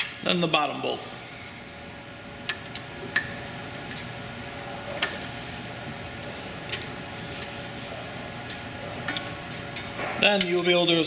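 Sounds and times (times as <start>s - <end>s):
steady background hum: 0.0s - 11.0s.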